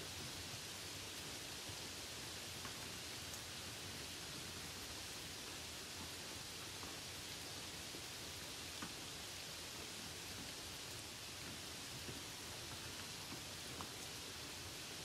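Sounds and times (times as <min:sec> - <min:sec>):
light rain falling: 0:00.0 - 0:15.0
raindrop ticks: 0:11.4 - 0:14.2.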